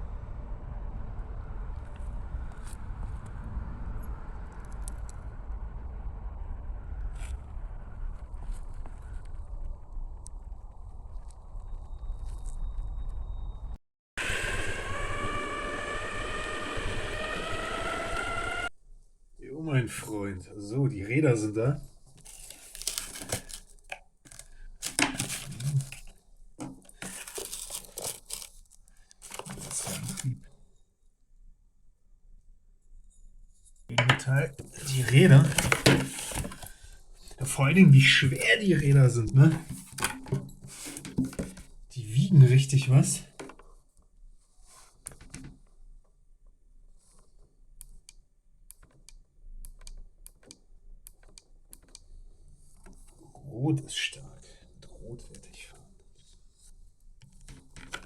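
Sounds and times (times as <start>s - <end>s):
packaging tearing and crumpling: 22.2s - 26.1s, 27.0s - 30.2s.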